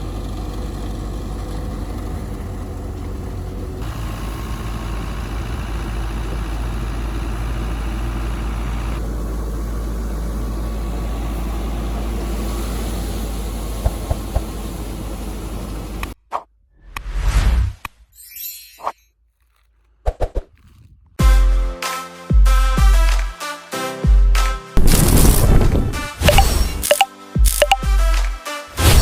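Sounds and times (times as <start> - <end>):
engine humming: 0.0 - 16.2
sharp clicks: 26.3 - 27.8.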